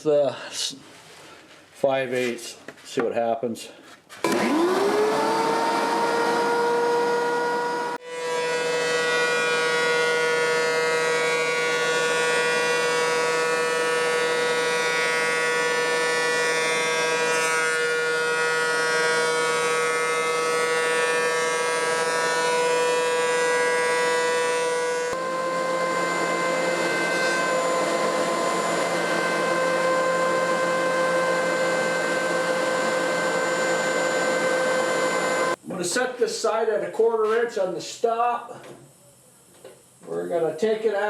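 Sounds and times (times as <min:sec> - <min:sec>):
planer motor high-pitched whine: 0:04.2 - 0:35.6.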